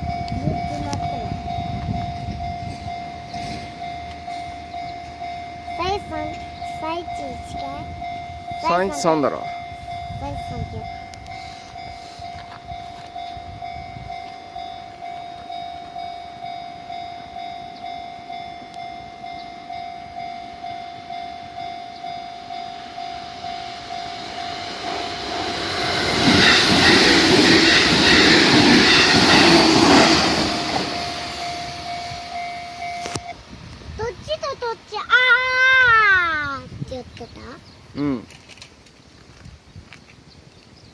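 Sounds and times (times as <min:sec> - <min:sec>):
level crossing bell ringing: 0:00.0 - 0:28.2, 0:28.8 - 0:33.3
electric train passing: 0:00.0 - 0:36.1.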